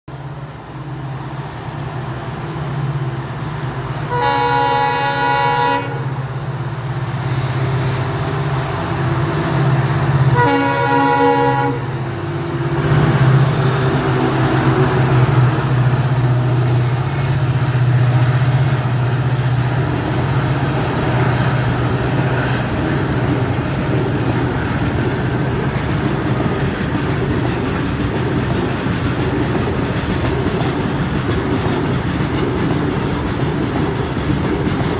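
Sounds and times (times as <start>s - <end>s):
diesel locomotives humming: 0.1s - 34.9s
passing train rushing: 0.1s - 34.9s
train horn blasts: 4.1s - 6.3s, 10.2s - 12.1s.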